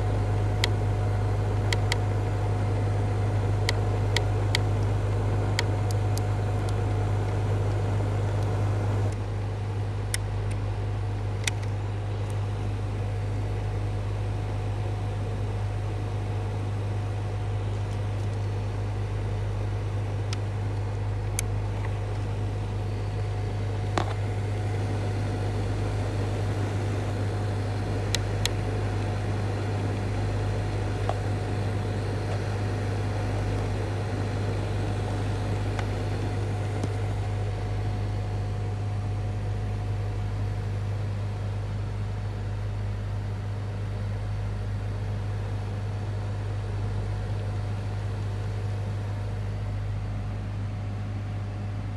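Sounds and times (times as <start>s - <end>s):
car cabin low hum: 0.0s - 9.4s, 10.0s - 51.9s
light clicks: 1.6s - 2.2s, 11.4s - 12.6s, 26.1s - 37.8s.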